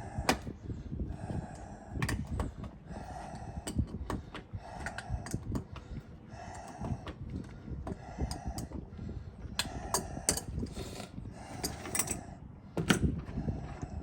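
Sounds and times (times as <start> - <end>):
metal tools clinking on bolts: 11.6 - 12.2.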